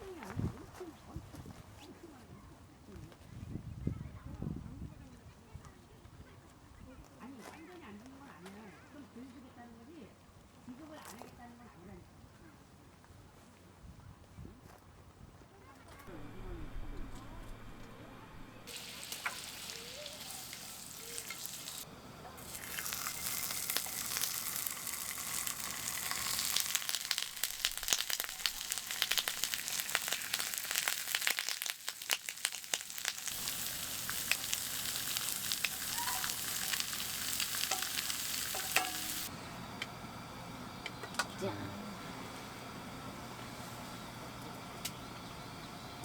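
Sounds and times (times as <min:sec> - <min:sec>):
food sizzling in a hot pan: 0:18.7 - 0:39.3.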